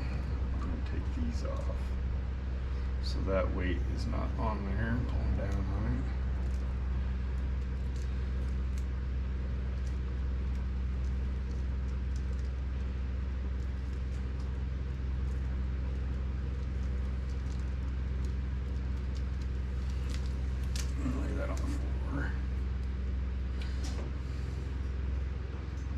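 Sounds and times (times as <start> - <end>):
steady low hum: 0.0 - 25.9.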